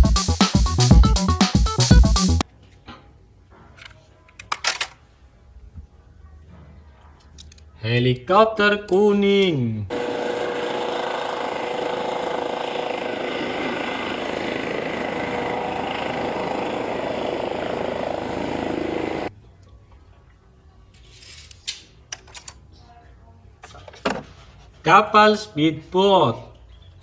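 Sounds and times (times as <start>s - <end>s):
helicopter running: 9.9s - 19.3s.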